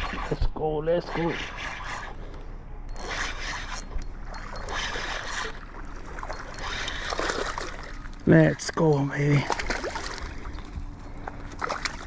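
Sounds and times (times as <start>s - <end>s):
water sloshing: 0.0s - 12.0s
fishing reel cranking: 2.9s - 5.6s, 6.3s - 7.7s.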